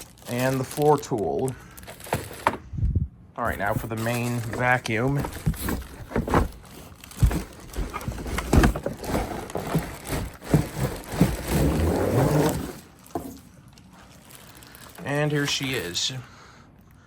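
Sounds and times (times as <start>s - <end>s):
packaging rustling and scraping: 0.0s - 2.6s, 3.4s - 16.0s
cardboard box knocks and thumps: 3.5s - 13.4s.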